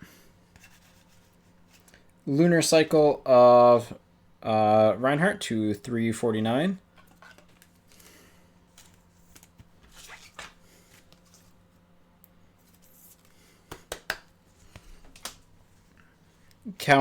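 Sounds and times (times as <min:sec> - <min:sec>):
cards rustling and tapping: 0:00.5 - 0:02.0, 0:06.9 - 0:08.1, 0:08.7 - 0:11.6, 0:12.6 - 0:16.0.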